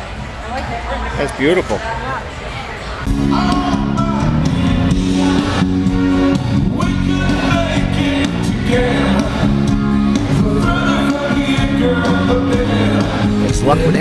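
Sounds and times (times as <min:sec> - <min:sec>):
band music with singing: 0:03.2 - 0:14.0.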